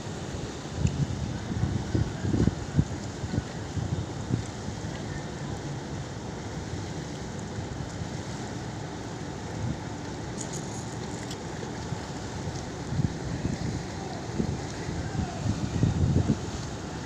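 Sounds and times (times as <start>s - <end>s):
boat engine rumbling: 0.0s - 17.0s
wind on microphone: 0.8s - 4.8s, 12.8s - 17.0s.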